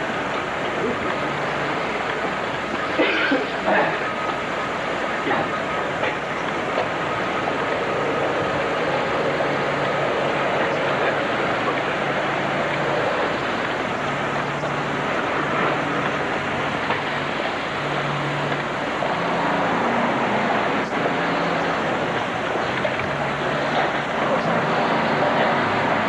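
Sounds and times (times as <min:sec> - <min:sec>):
city traffic hiss: 0:00.0 - 0:26.0
passing car engines: 0:05.2 - 0:26.0.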